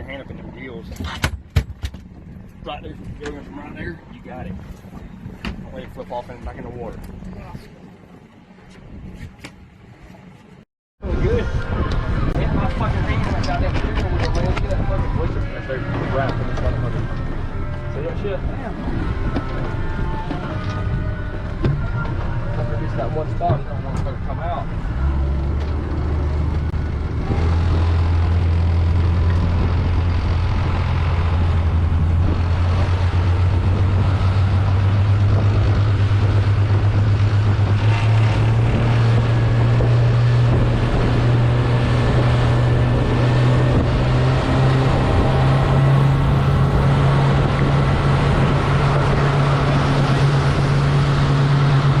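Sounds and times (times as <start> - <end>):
boat engine running: 0.0 - 52.0
wind rushing: 11.0 - 52.0.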